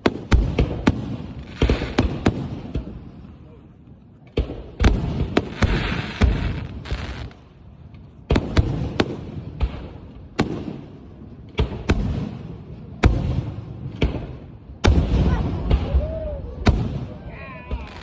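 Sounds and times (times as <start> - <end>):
fireworks crackle: 0.0 - 3.0, 4.2 - 10.8, 17.8 - 18.0
fireworks bangs: 0.0 - 3.3, 4.2 - 7.4, 8.2 - 18.0.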